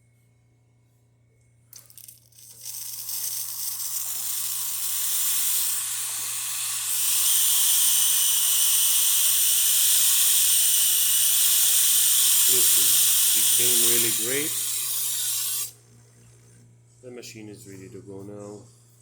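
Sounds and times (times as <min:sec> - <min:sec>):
espresso machine steam hissing: 0:02.4 - 0:15.8.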